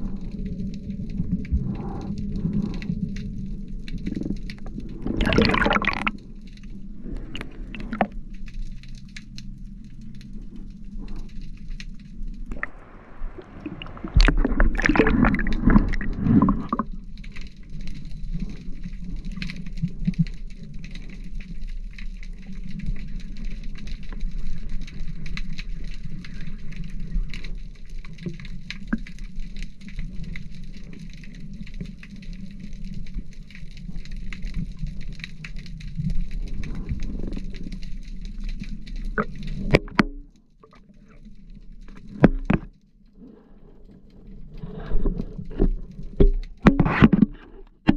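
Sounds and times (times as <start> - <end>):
underwater low rumble: 0.0 - 47.9
water rushing and bubbles: 0.0 - 47.9
faint ticks: 6.4 - 12.8.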